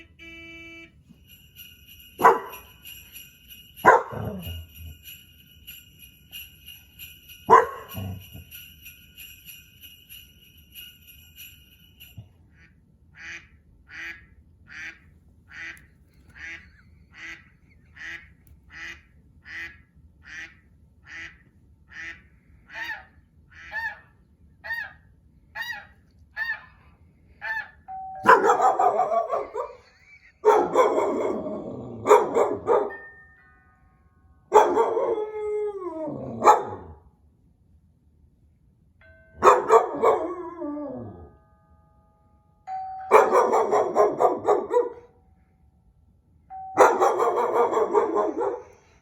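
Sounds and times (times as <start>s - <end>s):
dog barking and howling: 2.2s - 2.8s, 3.8s - 4.9s, 7.5s - 8.5s, 22.7s - 26.8s, 27.4s - 33.0s, 34.5s - 37.0s, 39.4s - 41.4s, 43.1s - 45.1s, 46.8s - 49.0s.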